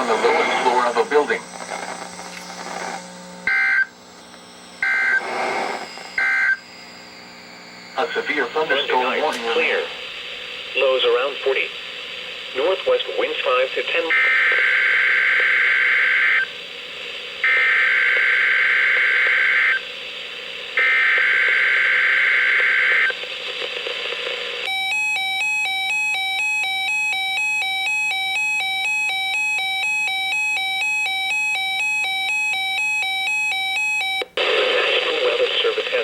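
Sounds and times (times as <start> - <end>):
pulsing electronic alarm beep: 3.5 - 3.9, 4.8 - 5.2, 6.1 - 7.2, 24.7 - 34.2.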